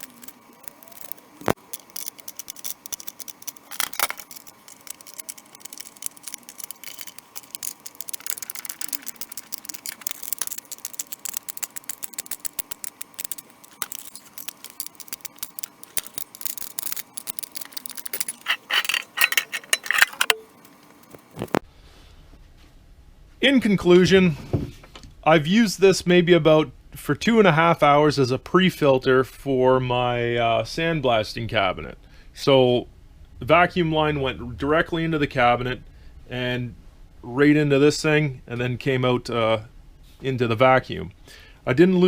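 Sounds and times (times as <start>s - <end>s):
metallic clicks and rattles: 0.0s - 21.6s
faint steady hum: 0.0s - 23.8s, 24.8s - 42.0s.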